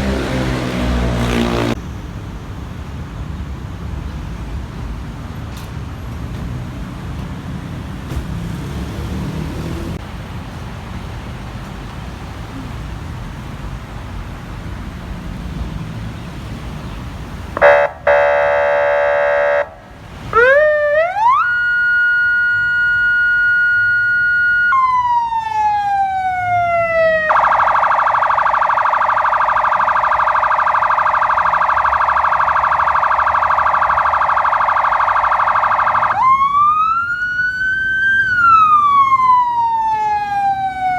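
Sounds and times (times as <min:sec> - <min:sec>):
buzzy horn blast: 0:00.0 - 0:01.8, 0:17.6 - 0:19.8
electronic vehicle siren: 0:17.6 - 0:19.8, 0:20.4 - 0:40.9.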